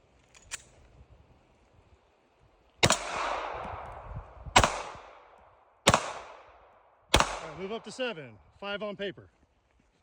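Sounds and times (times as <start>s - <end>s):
pistol shots on steel targets: 2.8s - 3.8s, 4.5s - 8.1s.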